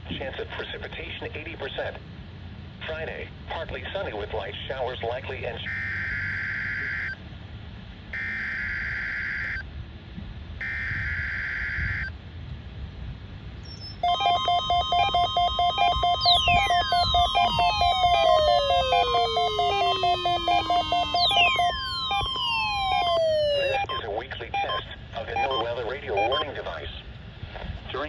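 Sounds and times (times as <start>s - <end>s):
pulsing electronic tone with sweeps: 14.0s - 23.9s
digital data bursts: 14.0s - 26.5s.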